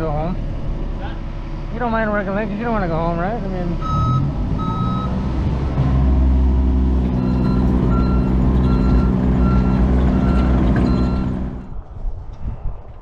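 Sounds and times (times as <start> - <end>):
construction machine engine running: 0.0 - 11.8
reversing alarm beeping: 3.8 - 5.2, 7.1 - 11.7.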